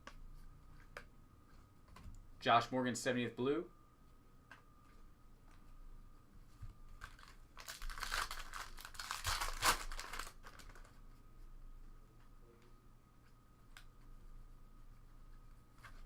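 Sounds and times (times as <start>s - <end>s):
card pack wrapper tearing and crinkling: 7.0s - 10.9s.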